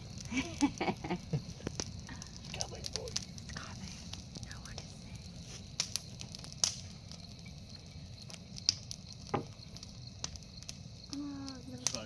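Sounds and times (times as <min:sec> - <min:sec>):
fire crackling and popping: 0:00.0 - 0:12.0.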